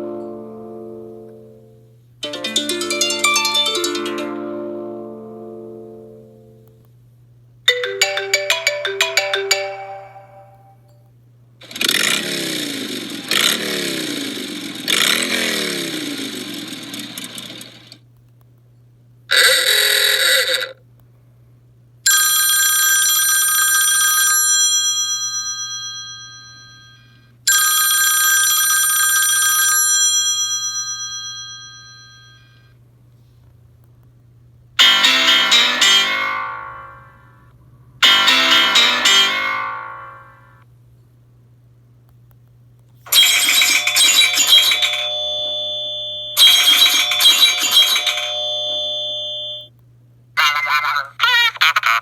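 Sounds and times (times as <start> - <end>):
plucked ringtone notes: 2.2 - 6.5, 7.7 - 10.9, 34.8 - 37.3, 38.0 - 40.6, 43.1 - 49.7
sliding falling alert notes: 7.7 - 10.8, 34.8 - 37.3, 38.0 - 40.6
bell-like chime: 43.1 - 49.7.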